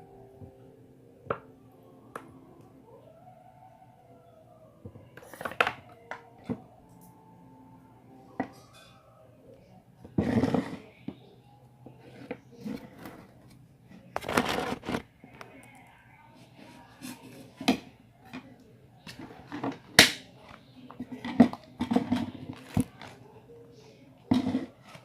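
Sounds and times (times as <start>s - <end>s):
rustling of small objects: 14.1s - 15.1s.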